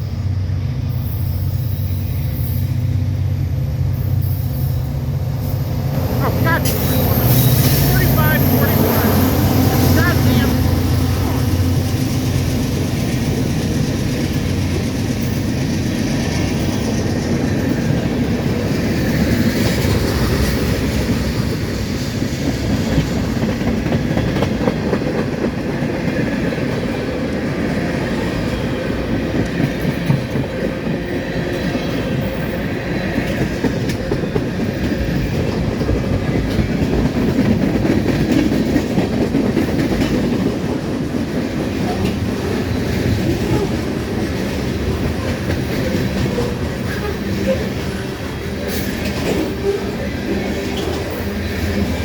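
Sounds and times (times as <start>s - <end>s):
freight train cars rumbling: 0.0s - 52.0s
wheels clacking over rail joints: 29.0s - 52.0s.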